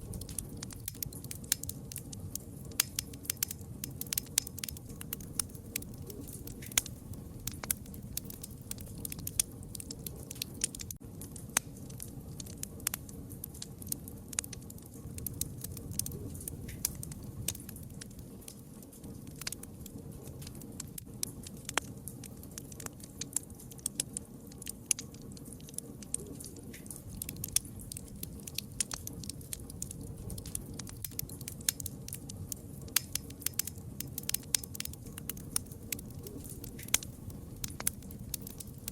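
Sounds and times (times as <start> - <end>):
rush of burning: 0.0 - 38.9
wood fire crackling: 0.0 - 38.9.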